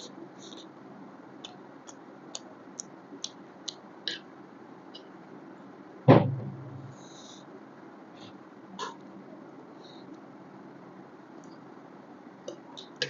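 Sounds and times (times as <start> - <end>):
chewing with wet mouth clicks: 1.4 - 4.2
loud sudden thump: 6.1 - 7.0.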